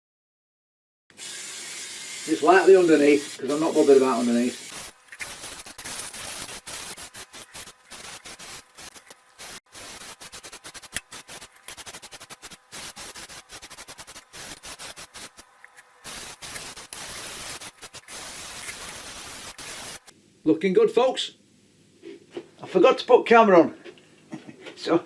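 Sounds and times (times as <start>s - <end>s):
paint spraying in short spurts: 1.2s - 20.1s.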